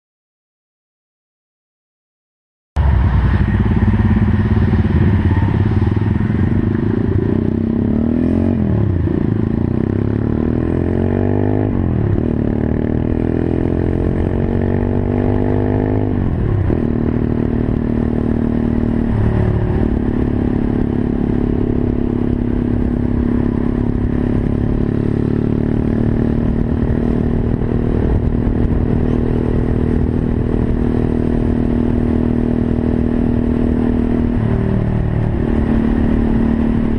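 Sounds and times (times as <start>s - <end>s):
small motorbike engine accelerating: 2.8s - 36.9s.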